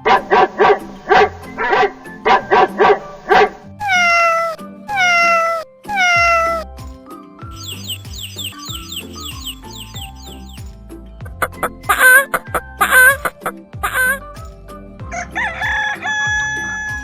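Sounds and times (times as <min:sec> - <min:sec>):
dog barking: 0:00.0 - 0:03.6
background music: 0:00.0 - 0:17.0
cat meowing: 0:03.8 - 0:06.6.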